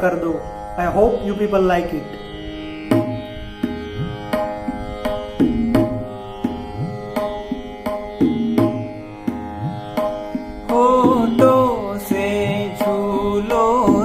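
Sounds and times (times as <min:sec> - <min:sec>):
sustained melody notes: 0:00.0 - 0:14.0
tabla strokes: 0:02.8 - 0:14.0.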